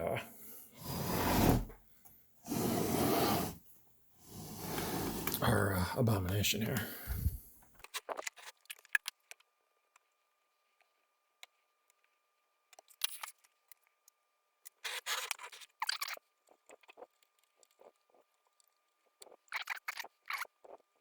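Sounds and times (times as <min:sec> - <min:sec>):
small clicks and scrapes: 0:04.4 - 0:05.4, 0:07.7 - 0:21.0.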